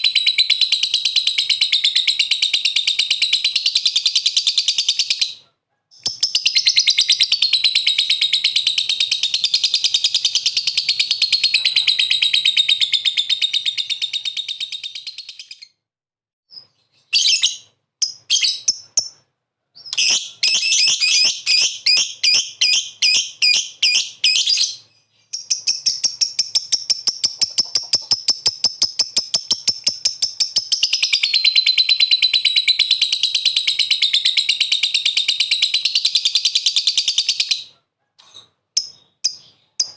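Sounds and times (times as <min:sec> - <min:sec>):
lovebird chattering: 0:06.0 - 0:15.7, 0:17.2 - 0:19.2, 0:19.8 - 0:37.7.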